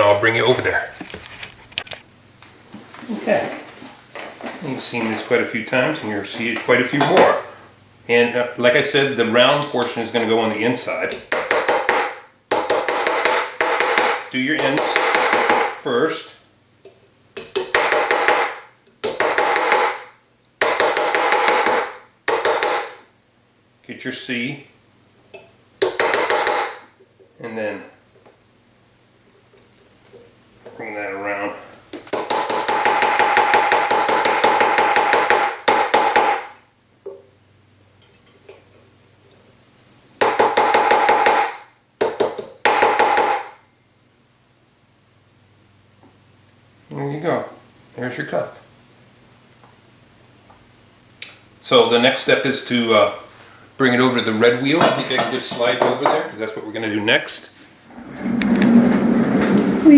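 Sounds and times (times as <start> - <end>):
hammer on metal ringing: 10.4 - 15.8.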